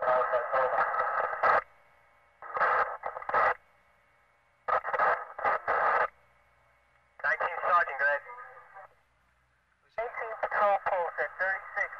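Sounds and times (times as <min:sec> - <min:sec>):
voice over two-way radio: 0:00.0 - 0:01.6, 0:07.2 - 0:08.9, 0:09.9 - 0:11.9.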